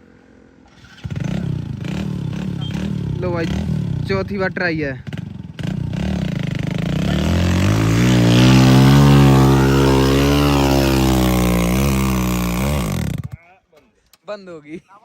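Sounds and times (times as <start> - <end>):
diesel engine revving hard: 0.9 - 4.2, 5.6 - 13.3.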